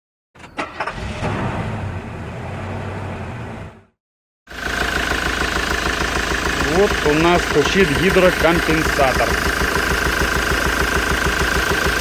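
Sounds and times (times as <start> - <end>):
diesel engine idling with knock: 4.5 - 12.0.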